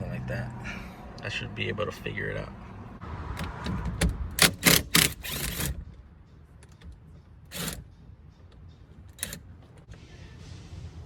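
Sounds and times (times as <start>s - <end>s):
impact wrench bursts: 4.4s - 5.8s.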